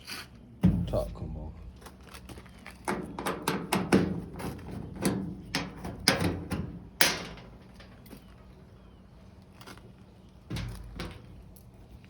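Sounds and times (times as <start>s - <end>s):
dryer panel knocks and clatters: 0.6s - 1.0s.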